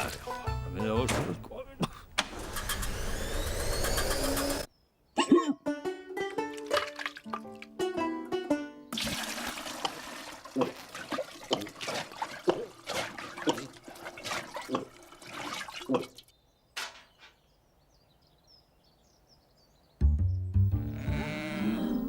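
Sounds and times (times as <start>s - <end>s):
water splashing: 6.5s - 7.7s, 9.0s - 16.3s.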